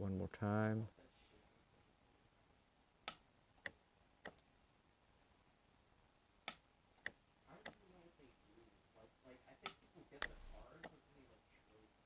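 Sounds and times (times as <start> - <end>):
micro-welder sharp snaps: 3.0 - 4.5, 6.4 - 7.8, 9.7 - 11.0.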